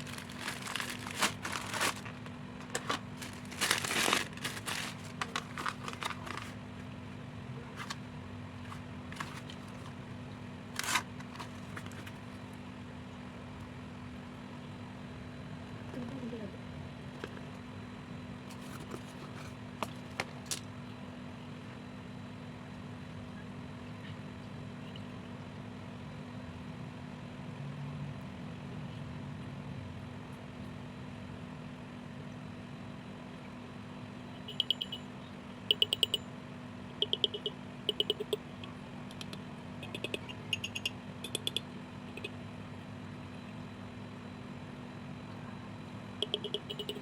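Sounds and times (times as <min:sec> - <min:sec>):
low steady hum: 0:00.0 - 0:47.0
scooter horn beeping: 0:34.4 - 0:35.1, 0:46.2 - 0:47.0.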